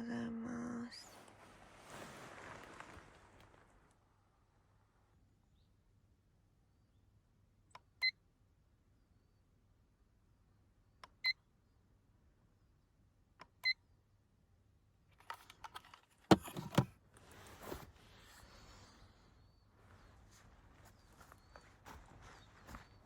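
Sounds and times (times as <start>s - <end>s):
rustling: 1.0s - 4.0s, 15.2s - 23.0s.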